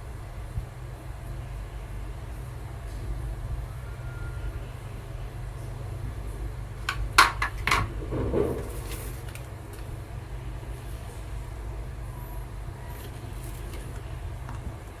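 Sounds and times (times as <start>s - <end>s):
steady low hum: 0.0s - 15.0s
sharp clicks and knocks: 6.9s - 8.5s.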